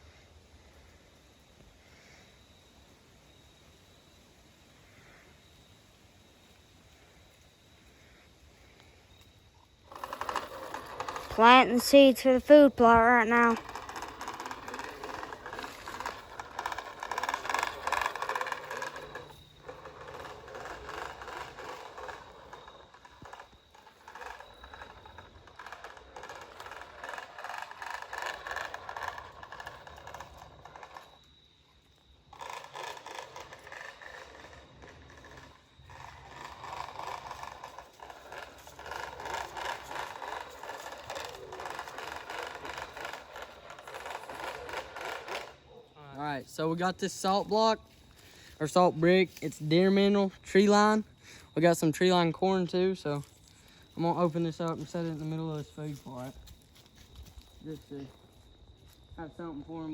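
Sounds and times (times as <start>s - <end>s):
seed rattling and scraping: 9.9s - 45.8s, 46.4s - 51.6s, 53.0s - 58.2s.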